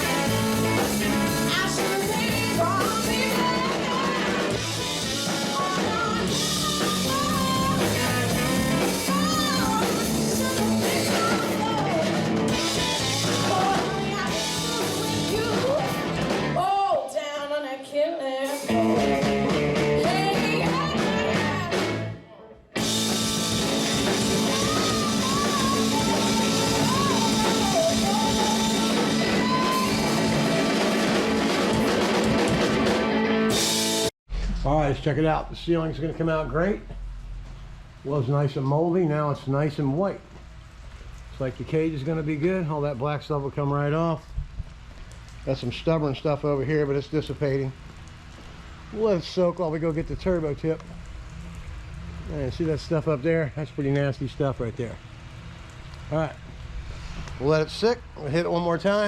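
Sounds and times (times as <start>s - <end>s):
person singing: 0.0s - 12.2s, 12.8s - 22.6s, 24.0s - 30.9s
electric guitar: 0.0s - 16.6s, 18.5s - 34.6s
drums: 0.0s - 17.2s, 18.4s - 59.0s.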